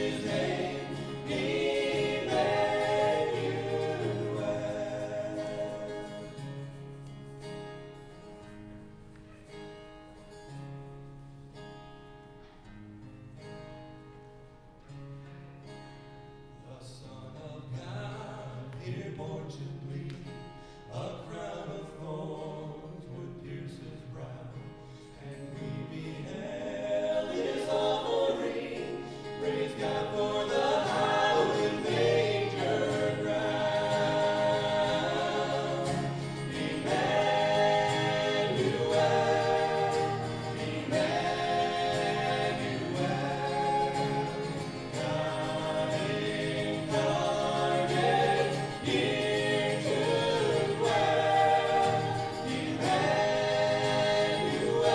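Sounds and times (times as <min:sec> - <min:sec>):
choir singing: 0:00.0 - 0:07.1, 0:25.3 - 0:54.9.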